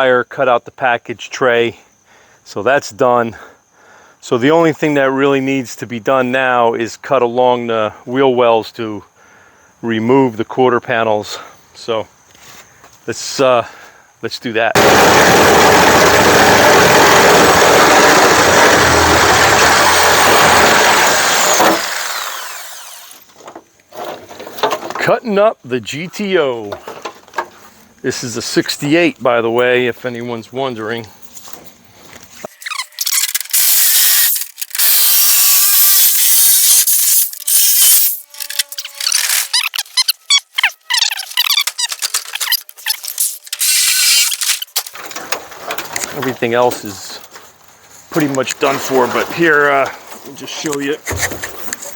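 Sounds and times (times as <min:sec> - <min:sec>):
power tool cutting sheet steel: 0:14.8 - 0:23.2, 0:32.5 - 0:44.9.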